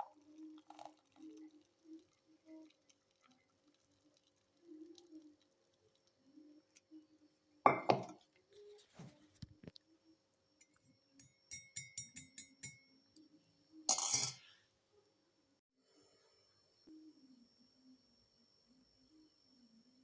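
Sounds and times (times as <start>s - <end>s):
spoon clinking against a glass: 7.7s - 8.2s, 10.6s - 12.9s, 13.9s - 14.4s.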